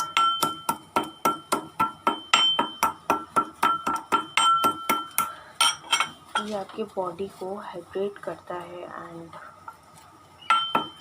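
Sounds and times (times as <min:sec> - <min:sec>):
pestle pounding in a mortar: 0:00.0 - 0:05.4, 0:10.5 - 0:11.0.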